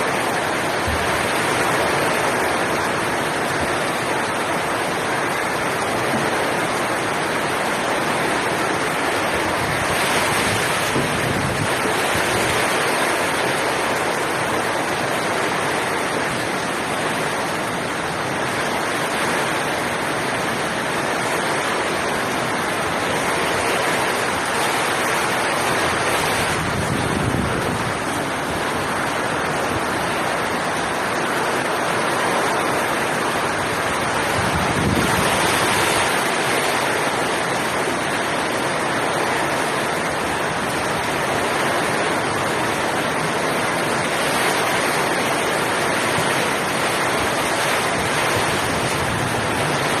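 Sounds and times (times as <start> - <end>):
heavy rain pouring: 0.0 - 50.0.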